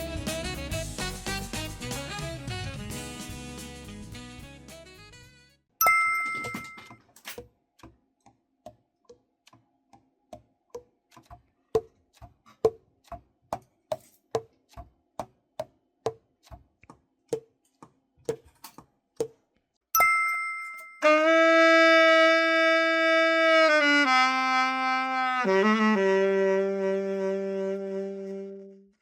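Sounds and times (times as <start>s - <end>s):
bright chime: 5.8s - 7.0s, 20.0s - 21.0s.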